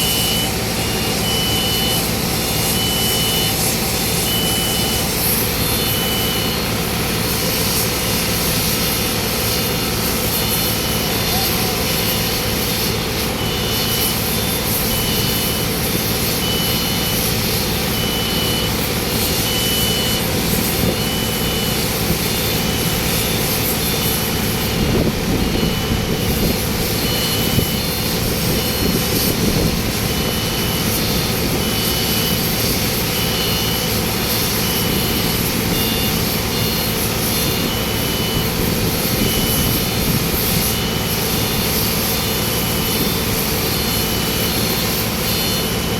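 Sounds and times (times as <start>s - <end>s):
high beeps: 0.0s - 6.7s, 16.3s - 24.2s, 25.4s - 29.3s, 30.1s - 39.8s
loud machinery running: 0.0s - 45.9s.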